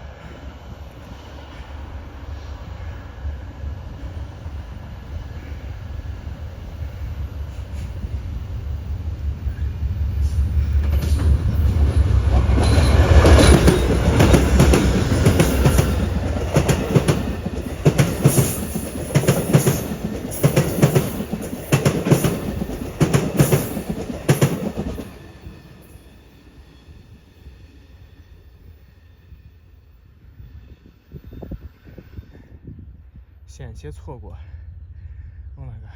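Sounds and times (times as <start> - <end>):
diesel locomotive rumble: 0.0 - 25.8
train wheels clickety-clack: 10.2 - 26.4.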